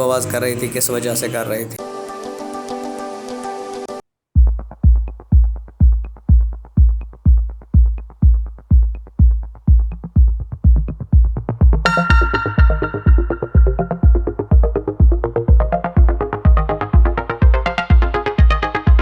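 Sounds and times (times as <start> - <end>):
steady kick-drum beat: 4.4 - 19.0
held synth chord: 11.9 - 18.8.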